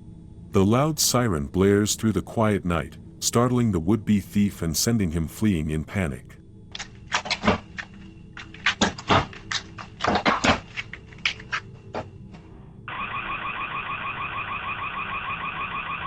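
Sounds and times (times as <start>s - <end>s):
sharp knocks and clatters: 6.8s - 12.6s
warbling security alarm siren: 12.9s - 16.0s.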